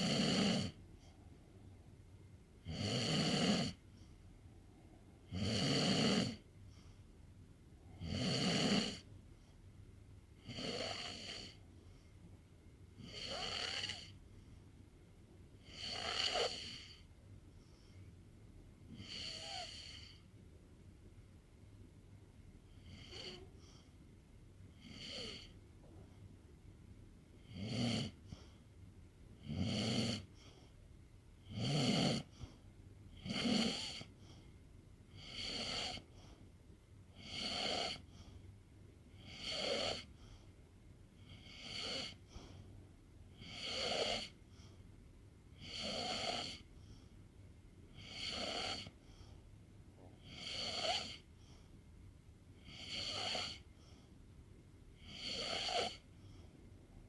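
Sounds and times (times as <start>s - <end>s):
pet snoring: 0.0s - 0.8s, 2.6s - 3.8s, 5.2s - 6.5s, 7.9s - 9.1s, 10.4s - 11.6s, 13.0s - 14.2s, 15.6s - 17.0s, 18.9s - 20.2s, 22.8s - 23.8s, 24.7s - 25.6s, 27.4s - 28.6s, 29.4s - 30.6s, 31.4s - 34.4s, 35.1s - 36.4s, 37.1s - 38.3s, 39.2s - 40.4s, 41.2s - 42.6s, 43.3s - 44.4s, 45.5s - 46.7s, 47.9s - 49.3s, 50.0s - 51.3s, 52.6s - 54.0s, 55.0s - 56.4s.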